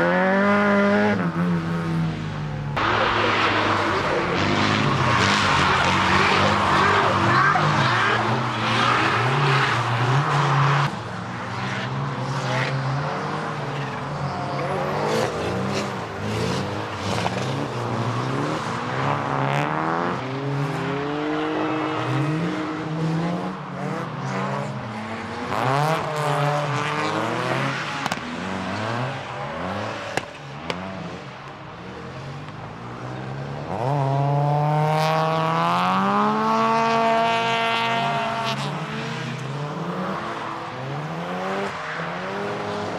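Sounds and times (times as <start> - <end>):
race car engines revving: 0.0 - 42.9
car passing close: 2.0 - 10.9.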